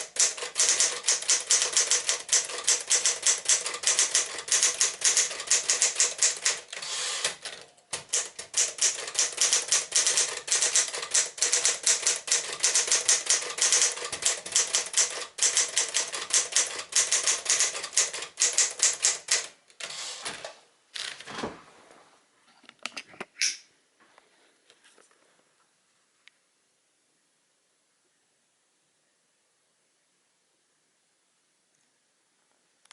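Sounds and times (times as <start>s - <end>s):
manual typewriter typing: 0.0s - 21.2s.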